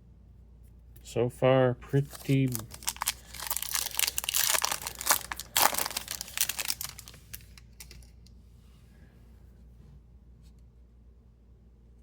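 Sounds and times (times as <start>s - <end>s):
foil wrapper crinkling: 2.0s - 8.1s.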